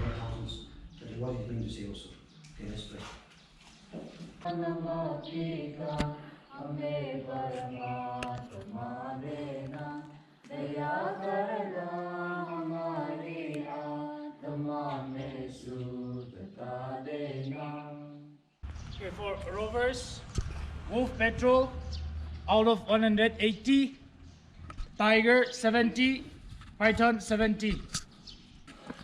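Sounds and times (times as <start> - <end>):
group of voices singing: 4.4 - 18.4.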